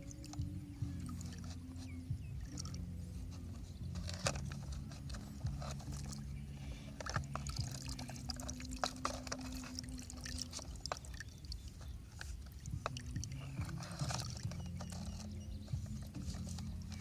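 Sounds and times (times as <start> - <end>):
trickling pouring sound: 7.0 - 15.1.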